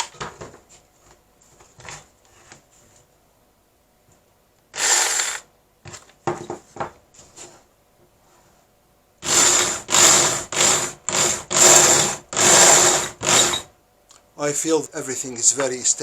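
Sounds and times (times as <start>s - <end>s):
electric drill bursts: 4.7s - 5.5s, 9.2s - 13.7s.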